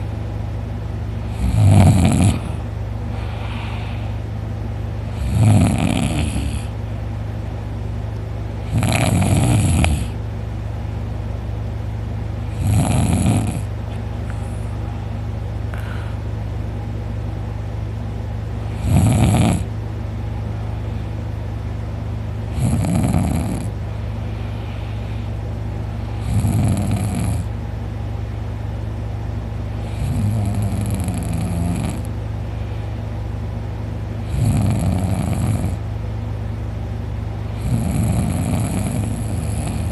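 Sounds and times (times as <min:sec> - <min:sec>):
steady low hum: 0:00.0 - 0:39.9
man snoring loudly: 0:01.3 - 0:02.6, 0:05.1 - 0:06.7, 0:08.6 - 0:10.2, 0:12.5 - 0:13.7, 0:18.7 - 0:19.7, 0:22.5 - 0:23.7, 0:26.2 - 0:27.5, 0:29.8 - 0:32.1, 0:34.2 - 0:35.8, 0:37.6 - 0:39.9.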